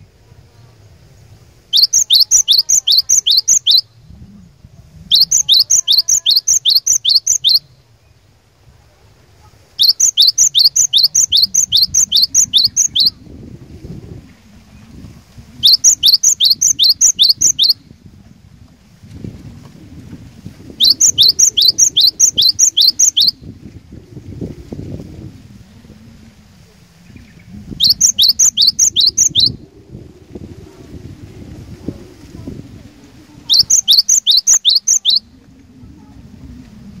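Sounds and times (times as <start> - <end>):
bird singing sharp repeated notes: 1.7 - 4.0, 5.1 - 8.2, 9.8 - 13.2, 15.6 - 17.8, 20.8 - 23.5, 27.2 - 29.6, 33.5 - 35.3.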